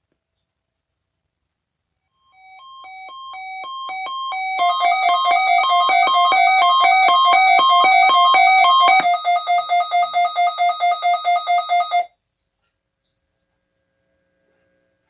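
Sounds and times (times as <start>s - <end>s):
weather radio alert alarm: 2.4s - 12.1s.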